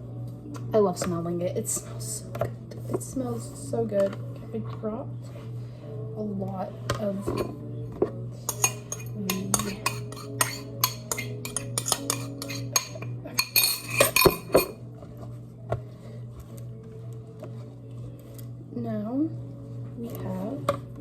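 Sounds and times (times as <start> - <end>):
spoon clinking against a bowl: 8.5 - 14.8.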